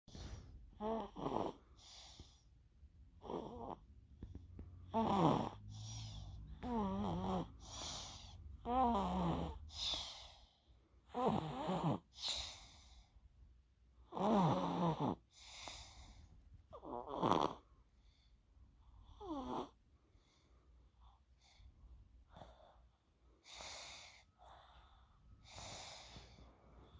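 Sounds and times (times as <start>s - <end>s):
person snoring: 0.8s - 2.0s, 3.2s - 3.8s, 4.9s - 10.5s, 11.1s - 12.6s, 14.1s - 15.9s, 16.8s - 17.6s.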